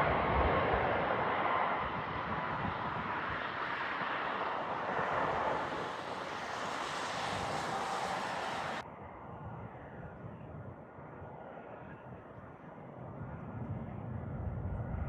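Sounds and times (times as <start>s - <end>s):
jet engines roaring: 0.0s - 9.0s.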